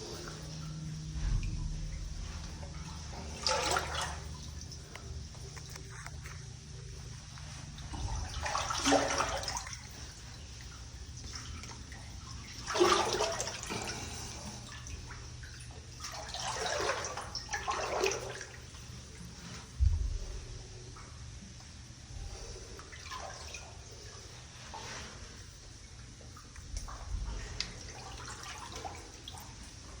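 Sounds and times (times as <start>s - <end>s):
feet wading through muddy water: 0.0s - 18.9s.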